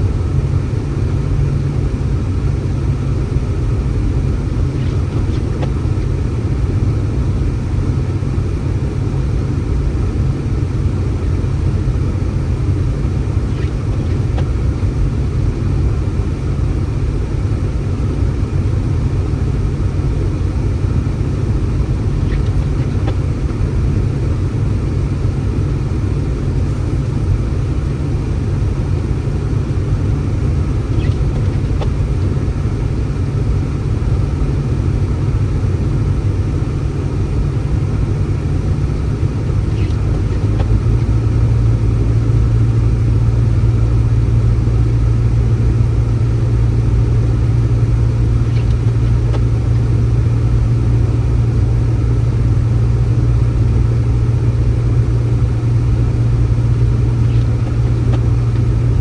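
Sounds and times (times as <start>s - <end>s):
steady low rumble: 0.0s - 59.0s
low hum: 53.8s - 59.0s.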